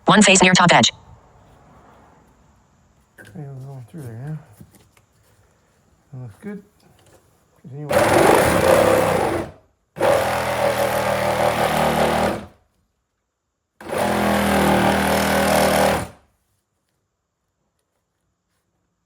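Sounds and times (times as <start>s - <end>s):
reciprocating saw cutting wood: 7.9s - 12.6s, 13.8s - 16.2s.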